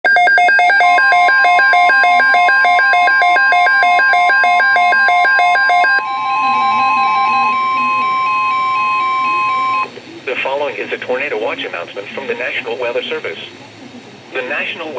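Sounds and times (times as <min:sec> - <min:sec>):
steady alarm tone: 0:00.0 - 0:09.9
two-pitch warbling alarm tone: 0:00.1 - 0:09.9.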